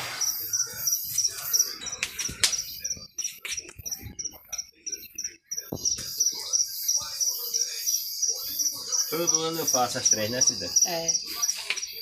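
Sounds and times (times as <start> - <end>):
bonfire cracking and popping: 0.0 - 2.7
insects chirping: 0.0 - 12.0.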